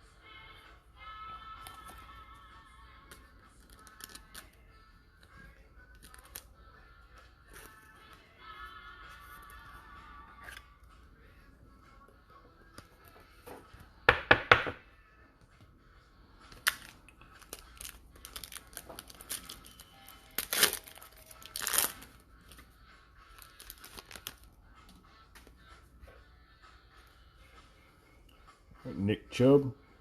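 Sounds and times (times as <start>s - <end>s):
foil card pack crackling: 6.0s - 6.5s, 16.6s - 22.2s, 23.4s - 24.5s.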